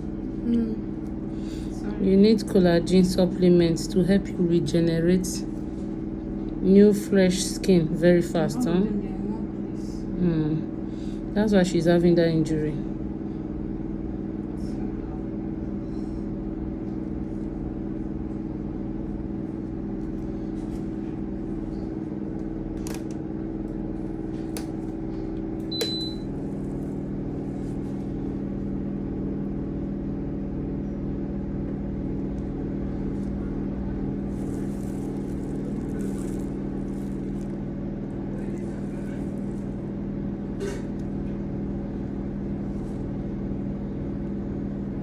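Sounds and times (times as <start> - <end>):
electrical machine hum: 0.0 - 45.0.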